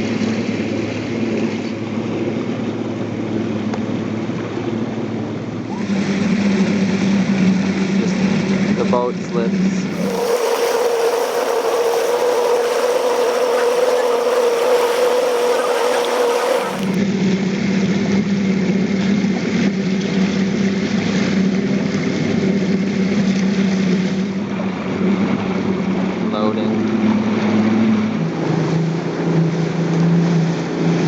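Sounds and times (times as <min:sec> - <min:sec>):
constant hiss: 0:09.9 - 0:17.0
small boat motor running: 0:09.9 - 0:17.0.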